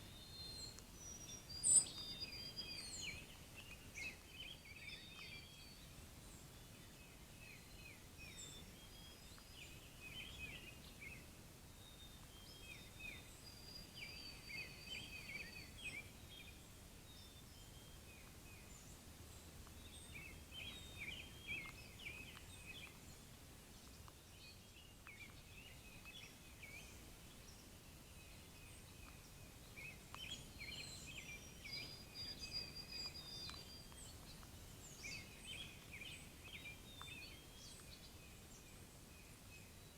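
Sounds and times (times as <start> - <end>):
birds chirping and singing: 0.0 - 11.2, 12.1 - 19.0, 19.6 - 23.1, 23.8 - 38.8
background hiss: 0.0 - 39.9.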